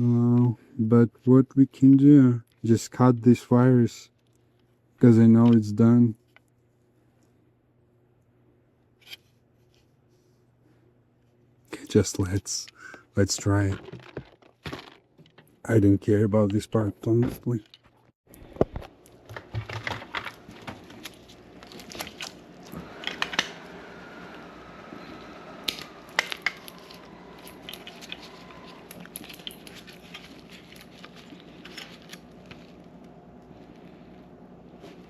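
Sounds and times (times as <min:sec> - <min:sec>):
wires clicking and snipping: 0:25.0 - 0:33.5.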